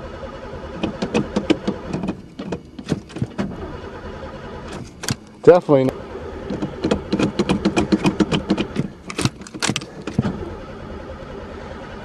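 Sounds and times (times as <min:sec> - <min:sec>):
engine cranking without starting: 0:00.0 - 0:12.0
engine knocks: 0:00.7 - 0:03.8, 0:06.4 - 0:10.7.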